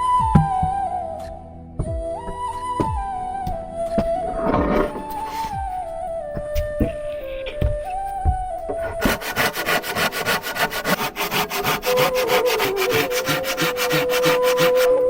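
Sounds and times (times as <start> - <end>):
saw cutting through wood: 4.0 - 5.7, 8.8 - 15.0.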